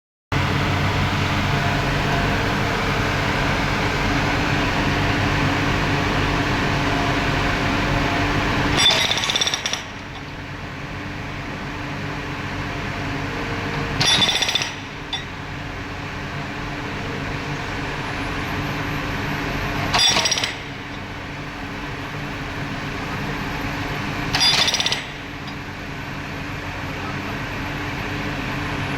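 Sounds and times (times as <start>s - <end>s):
excavator engine running: 0.4s - 28.9s
loud metallic ringing bursts: 8.2s - 10.2s, 13.4s - 15.4s, 18.4s - 21.2s, 22.2s - 26.5s
hydraulic rock breaker hammering: 8.2s - 10.4s, 13.4s - 15.5s, 19.7s - 21.2s, 23.9s - 25.8s.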